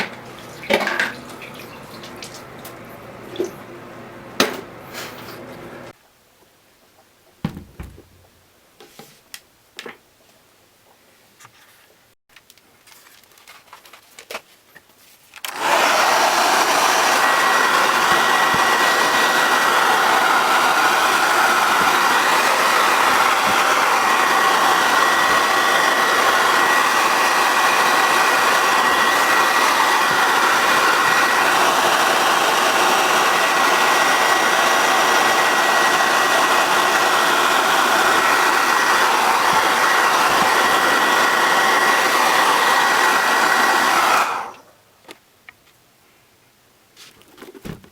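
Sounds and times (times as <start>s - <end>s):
electric blower motor whining: 15.5s - 44.7s.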